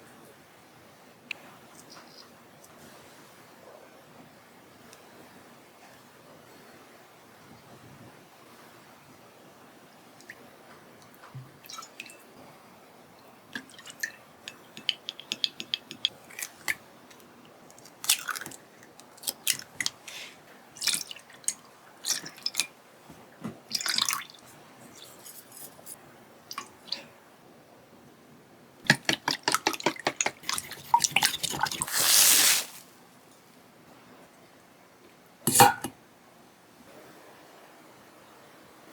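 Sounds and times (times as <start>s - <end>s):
water dripping and splashing: 13.6s - 16.8s, 20.8s - 22.7s, 23.7s - 24.4s, 28.9s - 32.8s
dishes clattering: 28.9s - 31.8s, 35.5s - 35.9s.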